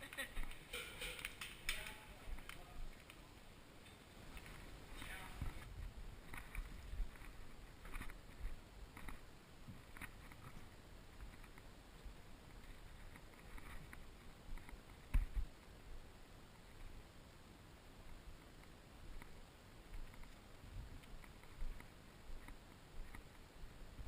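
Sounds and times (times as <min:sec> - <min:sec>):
soft footsteps: 0:00.0 - 0:16.0, 0:18.0 - 0:24.0.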